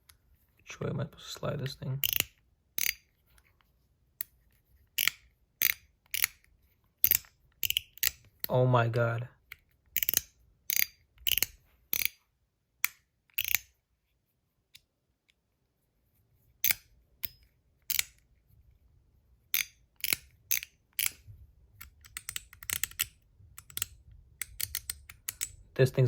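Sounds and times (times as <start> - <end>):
metal slider fidget clicking: 2.0 - 3.1, 5.0 - 6.4, 7.0 - 8.3, 10.0 - 12.2, 12.8 - 13.7, 16.6 - 18.2, 19.5 - 21.2, 21.8 - 25.6.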